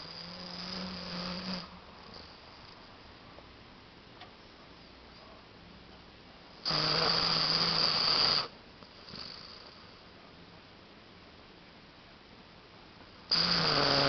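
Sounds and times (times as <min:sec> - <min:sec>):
dog snoring: 0:00.0 - 0:02.8, 0:06.6 - 0:10.0, 0:13.3 - 0:14.0.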